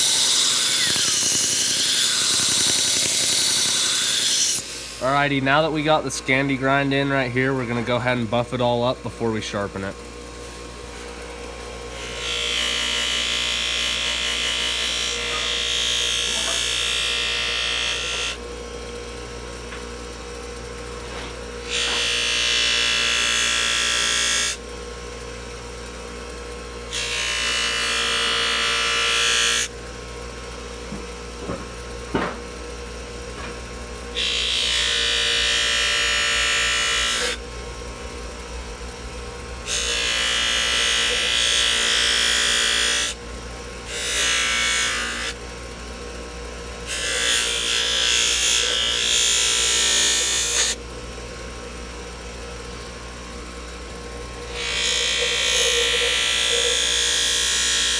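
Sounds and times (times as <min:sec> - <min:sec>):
knife blade hissing on buffing wheel: 0:00.0 - 0:05.6, 0:33.0 - 0:46.1, 0:54.4 - 0:57.9
buffing wheel motor running: 0:29.7 - 0:53.0, 0:53.9 - 0:57.9.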